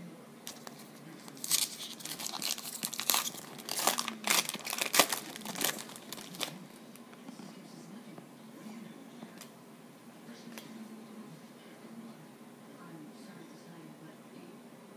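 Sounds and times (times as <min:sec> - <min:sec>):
foil wrapper crinkling and tearing: 0:00.5 - 0:06.6.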